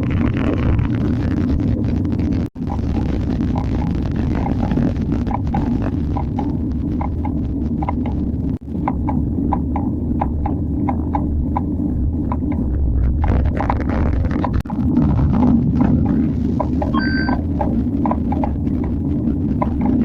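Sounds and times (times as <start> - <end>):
low rumble of riding: 0.0 - 20.0.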